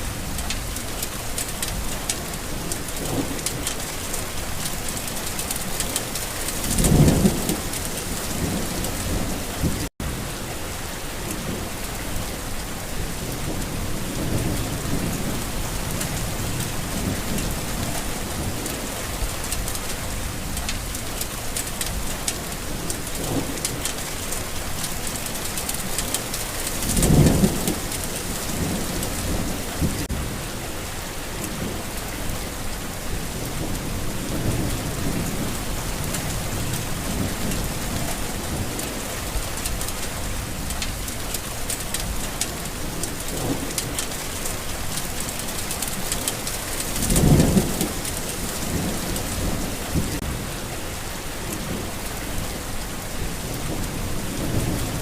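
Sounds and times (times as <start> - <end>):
rain falling: 0.0 - 55.0.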